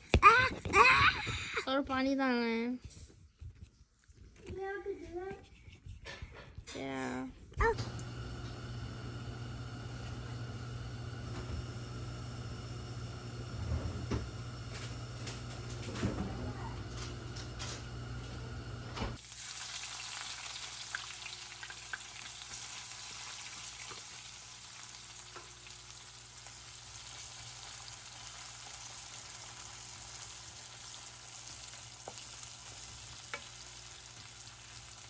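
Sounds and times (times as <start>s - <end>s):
food sizzling in hot oil: 17.8s - 35.0s.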